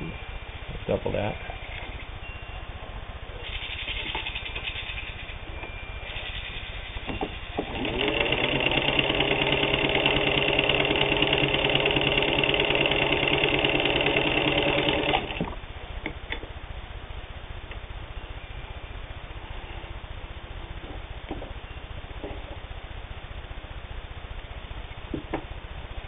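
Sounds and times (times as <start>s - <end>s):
sewing machine stitching: 7.6s - 15.5s.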